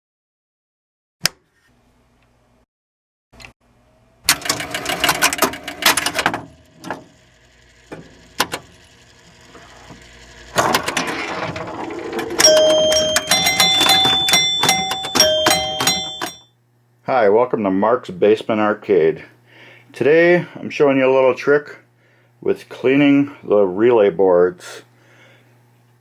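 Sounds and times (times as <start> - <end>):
ringing chime tones: 12.4 - 16.5.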